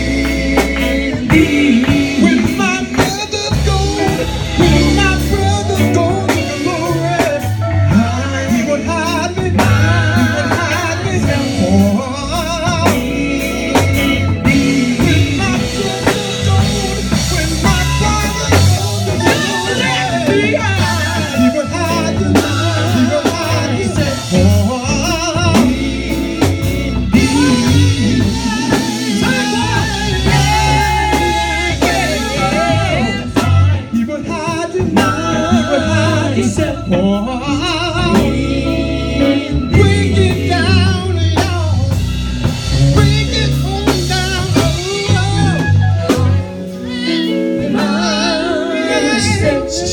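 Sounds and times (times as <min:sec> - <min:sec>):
bass guitar: 0:00.0 - 0:49.9
drum kit: 0:00.0 - 0:49.9
gospel singing: 0:00.0 - 0:49.9
guitar: 0:00.0 - 0:49.9.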